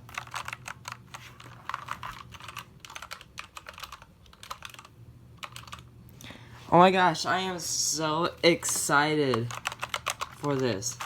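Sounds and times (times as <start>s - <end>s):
keyboard keys clicking: 1.7s - 5.8s, 9.3s - 11.0s.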